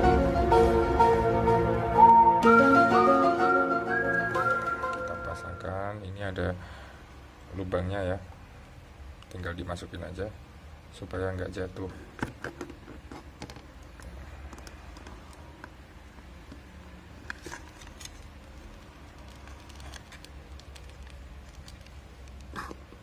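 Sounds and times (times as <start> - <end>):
plastic parts clicking: 17.2 - 23.0.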